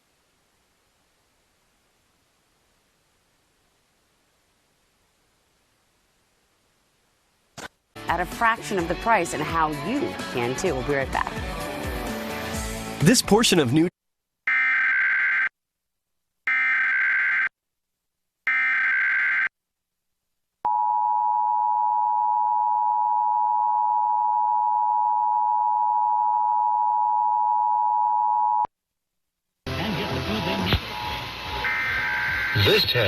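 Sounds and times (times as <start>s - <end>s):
buzzy digital data tones: 30.1s - 33.0s
two-tone attention signal: 30.8s - 33.0s.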